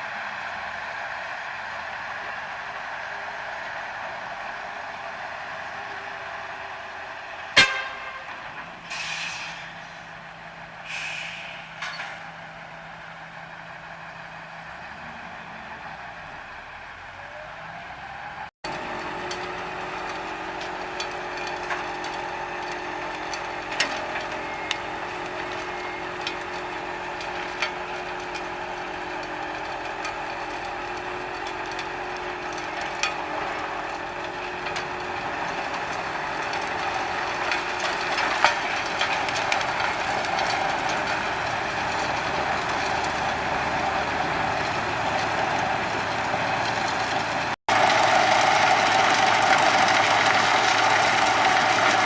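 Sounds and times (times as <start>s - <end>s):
wood chipper running: 11.8s - 52.0s
wood knocking in chipper: 18.7s - 52.0s.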